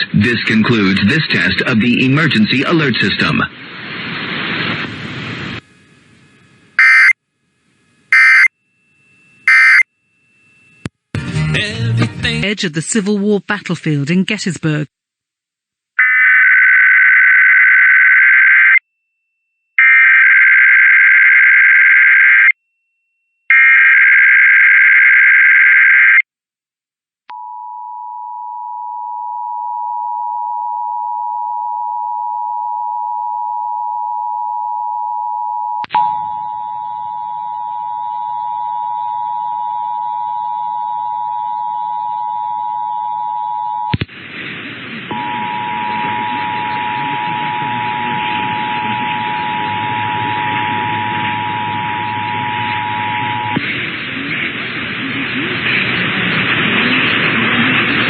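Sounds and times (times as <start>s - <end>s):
faint hum and noise: 0.0s - 14.9s, 30.6s - 58.0s
two-tone attention signal: 9.5s - 9.9s, 45.1s - 53.6s.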